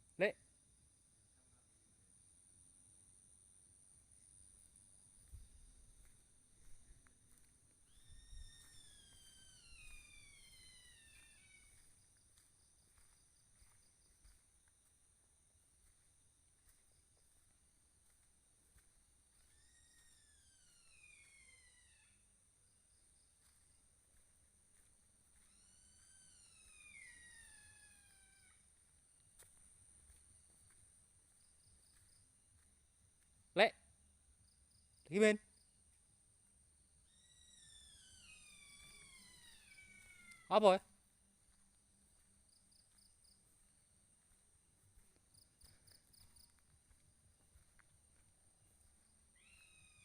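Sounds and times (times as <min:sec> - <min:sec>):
descending whistle-like call: 0:07.9 - 0:11.9, 0:25.5 - 0:28.6, 0:37.1 - 0:40.6
faint animal wail: 0:37.2 - 0:40.5.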